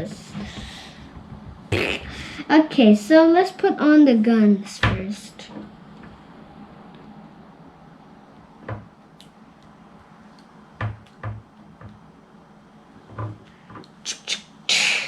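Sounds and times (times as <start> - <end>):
hard plastic parts knocking: 8.6 - 8.9, 10.8 - 12.0, 13.1 - 13.9.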